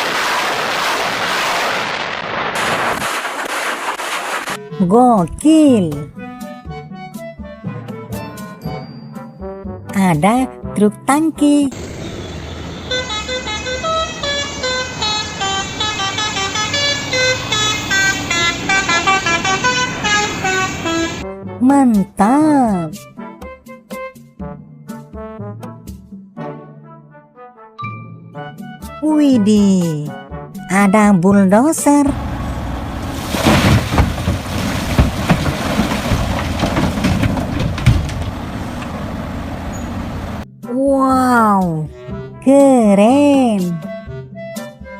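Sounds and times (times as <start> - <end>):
multi-tone vehicle horn melody: 11.7 - 21.5.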